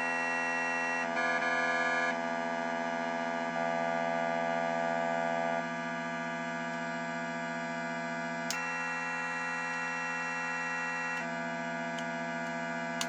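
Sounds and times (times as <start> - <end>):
electronic keyboard buzzy tones: 3.1 - 5.8.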